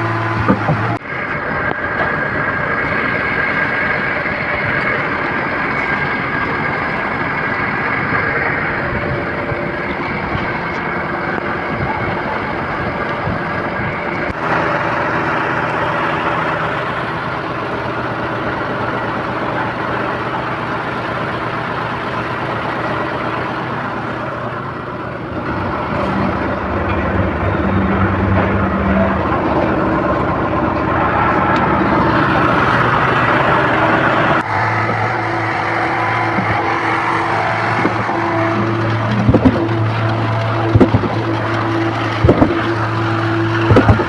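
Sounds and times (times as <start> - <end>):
heavy diesel engine running: 0.0 - 44.0.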